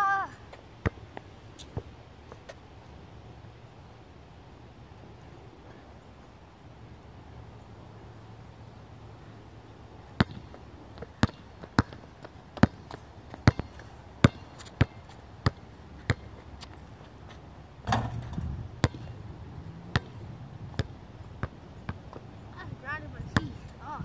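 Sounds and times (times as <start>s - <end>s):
basketball bouncing on court: 10.2s - 16.4s, 17.9s - 19.2s, 19.9s - 20.2s, 20.8s - 22.0s.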